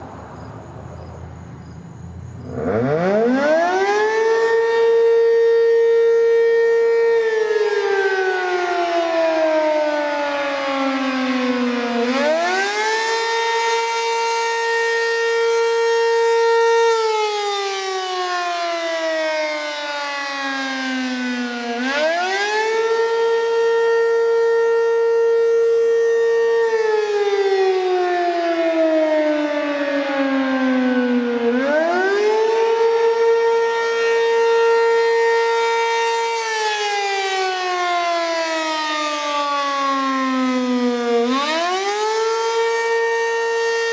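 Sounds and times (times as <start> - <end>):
fire siren wailing: 2.1 - 43.9.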